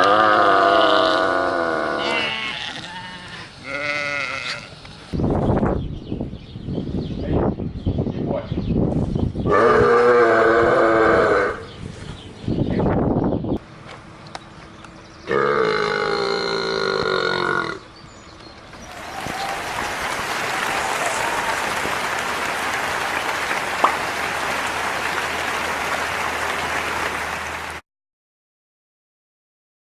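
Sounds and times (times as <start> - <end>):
long loud burp: 0.0 - 4.7, 9.5 - 11.6, 15.3 - 17.8
applause: 18.8 - 27.8.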